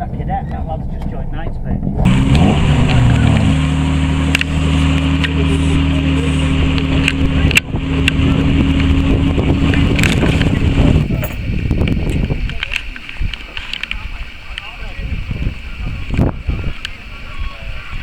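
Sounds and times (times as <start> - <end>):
car engine idling: 2.1 - 16.0.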